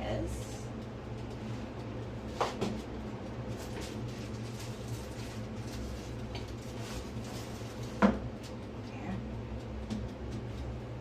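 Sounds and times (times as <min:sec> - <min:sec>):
oven low hum: 0:00.0 - 0:11.0
baking dish knocking in oven: 0:08.0 - 0:08.3.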